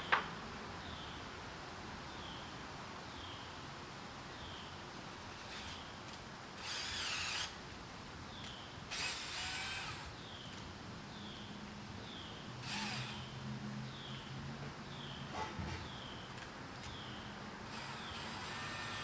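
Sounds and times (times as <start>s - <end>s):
cordless drill boring into wood: 5.4s - 5.9s, 6.6s - 7.6s, 8.9s - 10.1s, 12.6s - 13.3s, 17.7s - 19.0s.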